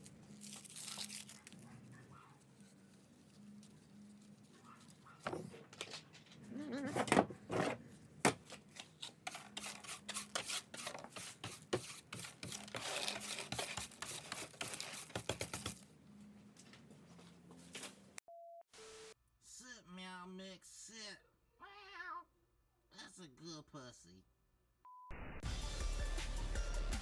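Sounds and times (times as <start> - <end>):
cat meowing: 21.6 - 22.3.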